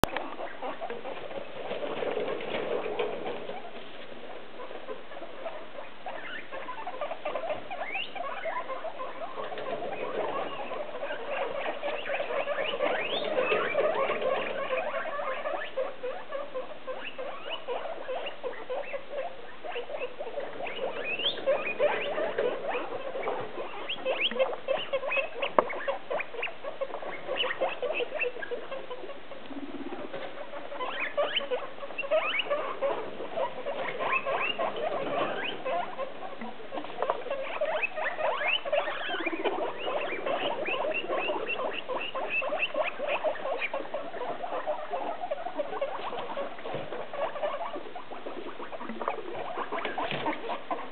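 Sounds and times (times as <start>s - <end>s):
guinea pigs squeaking and chattering: 0.0s - 50.9s
guinea pig shrill whistles: 19.8s - 22.4s, 37.4s - 43.8s.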